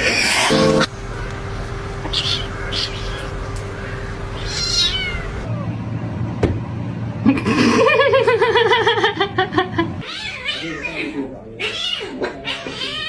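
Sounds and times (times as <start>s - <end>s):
cat meowing: 2.1s - 3.3s, 4.4s - 5.6s, 10.0s - 13.0s
cat yowling: 2.1s - 3.3s, 4.4s - 5.7s, 10.0s - 13.0s.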